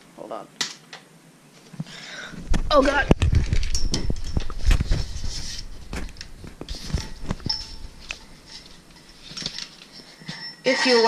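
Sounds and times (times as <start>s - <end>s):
equipment handling knocks and thumps: 2.4s - 9.6s.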